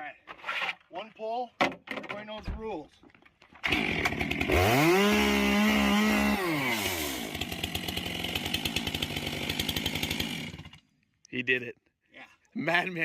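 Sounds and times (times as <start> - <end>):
chainsaw starting and revving: 3.6 - 10.9.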